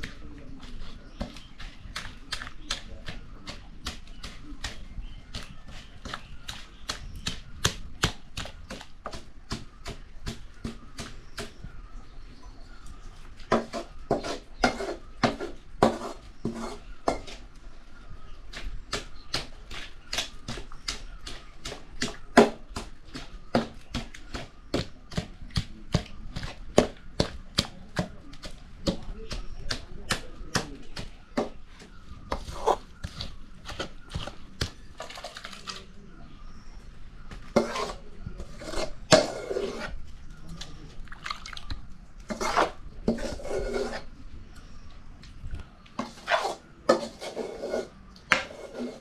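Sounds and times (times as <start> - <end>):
knife chopping vegetables: 13.5 - 17.4, 18.5 - 34.9.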